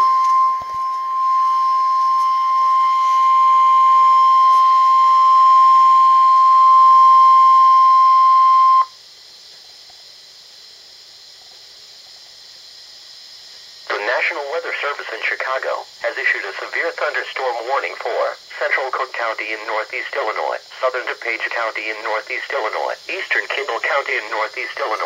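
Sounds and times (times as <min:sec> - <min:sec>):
high-pitched alarm beep: 0:00.0 - 0:09.0
faint radio hiss: 0:00.0 - 0:25.0.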